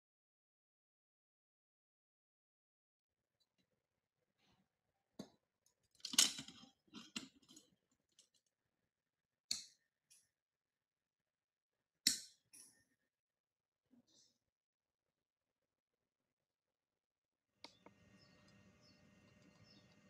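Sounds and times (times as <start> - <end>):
objects clicking and scraping: 5.8 - 8.5.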